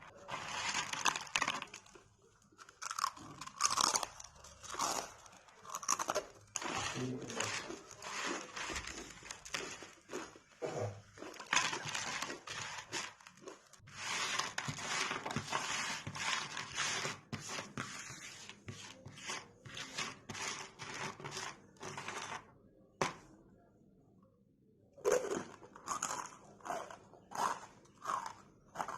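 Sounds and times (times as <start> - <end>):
crunchy snack being chewed: 0.3 - 13.8, 25.0 - 28.9.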